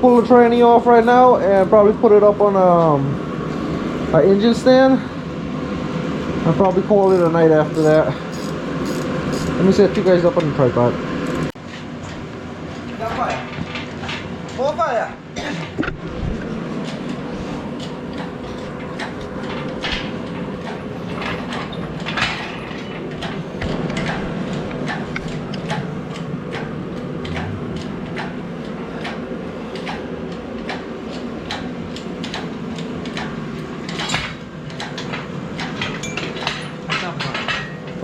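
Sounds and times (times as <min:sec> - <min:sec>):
steady low hum: 0:00.0 - 0:13.0, 0:13.6 - 0:36.5
hand tools clicking on metal: 0:07.0 - 0:09.7, 0:11.2 - 0:11.6.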